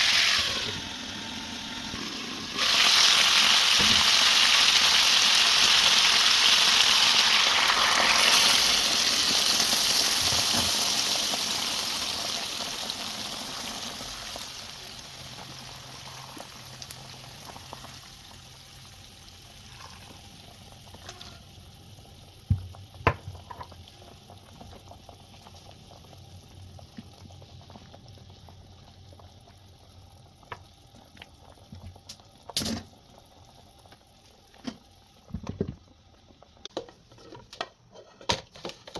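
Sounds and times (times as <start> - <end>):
food sizzling in hot oil: 0.0 - 31.2.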